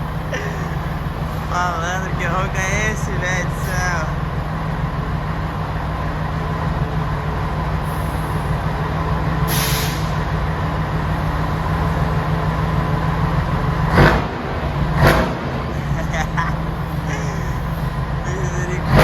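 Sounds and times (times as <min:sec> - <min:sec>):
diesel truck engine running: 0:00.0 - 0:19.0
presenter talking: 0:01.5 - 0:04.2, 0:18.2 - 0:19.0
air hiss: 0:09.5 - 0:10.2.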